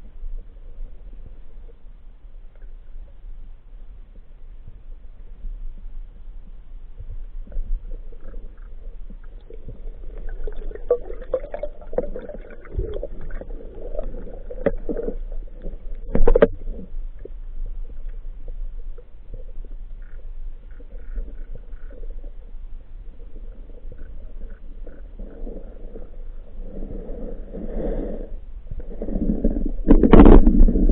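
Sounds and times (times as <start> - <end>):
clicks and knocks underwater: 7.4 - 22.5, 28.7 - 30.9.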